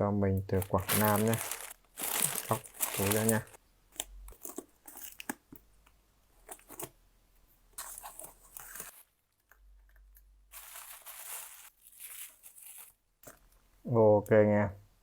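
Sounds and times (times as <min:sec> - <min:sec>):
plastic packaging tearing and crinkling: 0:00.6 - 0:05.4, 0:07.8 - 0:09.2, 0:10.5 - 0:13.0.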